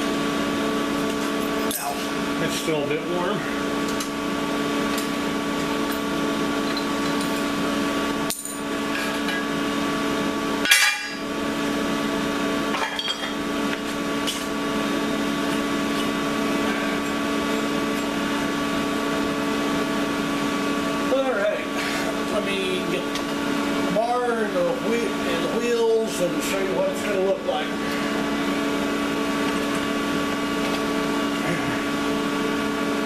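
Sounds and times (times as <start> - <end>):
steady electric hum: 0.0 - 33.0
metal parts clanking: 10.6 - 11.2.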